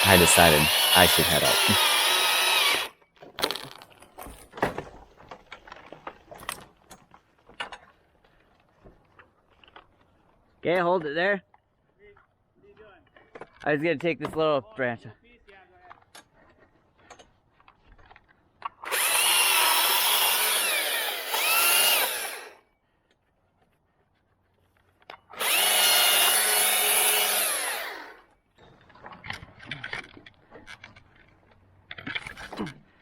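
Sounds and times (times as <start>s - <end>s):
electric chainsaw cutting branch: 0.0s - 3.0s, 18.8s - 22.6s, 25.3s - 28.3s.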